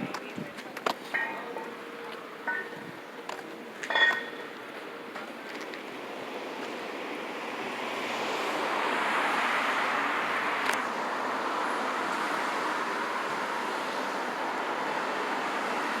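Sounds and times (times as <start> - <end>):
road traffic rushing: 0.0 - 16.0.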